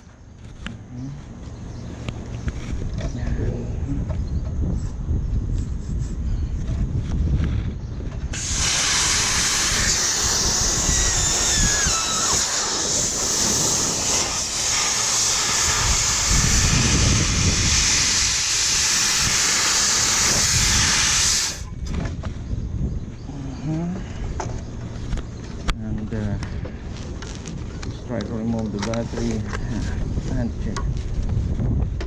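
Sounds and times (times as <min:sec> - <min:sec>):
compressed air hissing from nozzle: 0:08.3 - 0:21.7.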